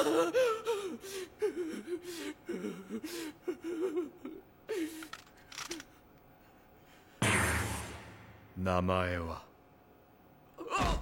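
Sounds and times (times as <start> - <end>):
man whimpering and sobbing: 0.0 - 5.0.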